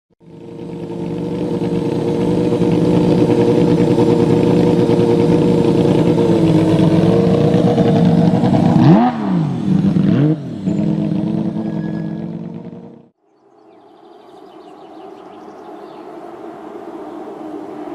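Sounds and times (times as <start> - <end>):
car engine running with throttle blips: 0.2 - 13.2.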